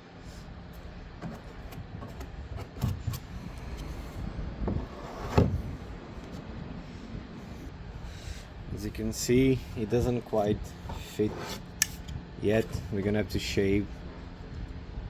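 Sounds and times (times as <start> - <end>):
plastic knocks and scrapes: 1.2 - 3.3.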